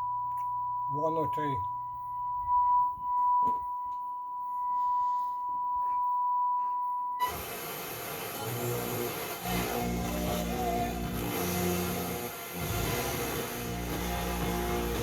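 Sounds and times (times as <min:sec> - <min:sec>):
steady sine test tone: 0:00.0 - 0:15.0
music: 0:08.2 - 0:15.0.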